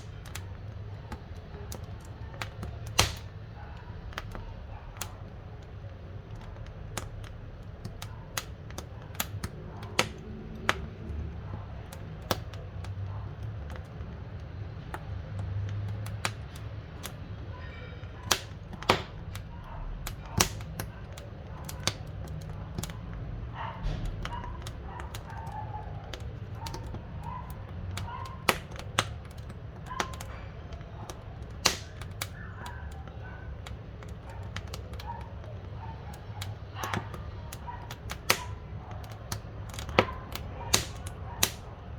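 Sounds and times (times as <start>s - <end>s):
firewood crackling and popping: 0.0s - 41.9s
low rumble of flames: 0.0s - 41.9s.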